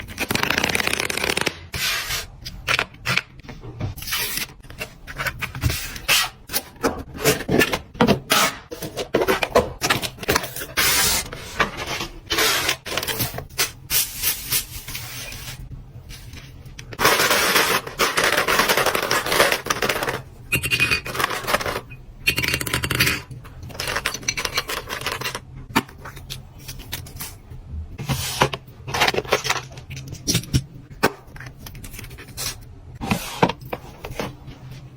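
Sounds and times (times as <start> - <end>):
scratching on packaging: 4.0 - 21.9.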